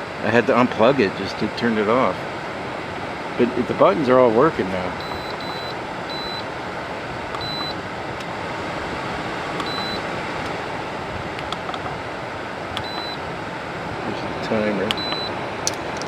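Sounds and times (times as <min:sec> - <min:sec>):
dehumidifier fan rushing: 0:00.0 - 0:16.0
short high beeps: 0:05.0 - 0:06.5, 0:07.4 - 0:07.8, 0:09.6 - 0:10.0, 0:12.8 - 0:13.2, 0:14.9 - 0:15.3.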